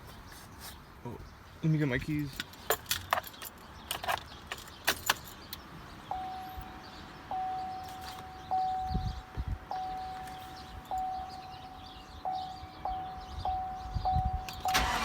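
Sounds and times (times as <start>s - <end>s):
vehicle warning chime: 6.1s - 15.0s.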